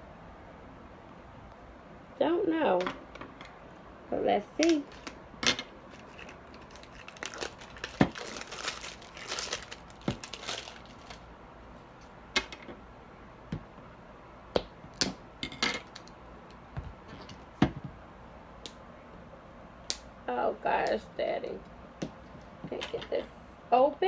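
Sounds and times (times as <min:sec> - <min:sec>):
plastic packaging crinkling: 0:04.5 - 0:11.3.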